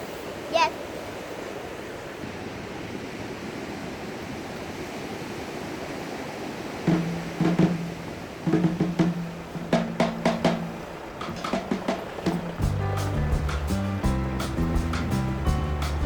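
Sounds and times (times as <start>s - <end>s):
ocean surf: 0.0s - 16.0s
drum hits: 6.9s - 16.0s.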